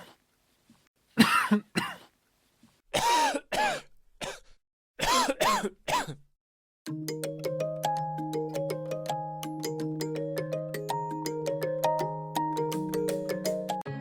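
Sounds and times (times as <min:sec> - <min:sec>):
person coughing: 0:01.2 - 0:02.1, 0:03.0 - 0:06.3
light mallet percussion music: 0:06.9 - 0:13.9.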